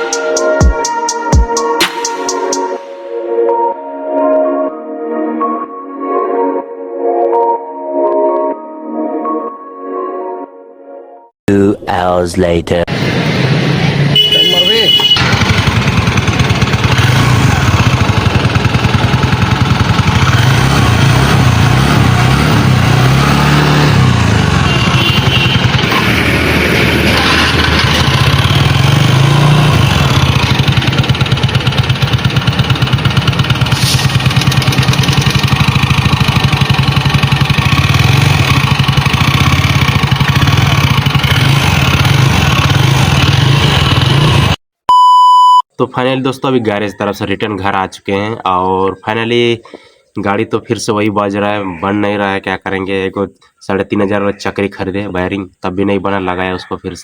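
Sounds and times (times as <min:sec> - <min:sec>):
small motorcycle engine running: 0:13.0 - 0:44.6.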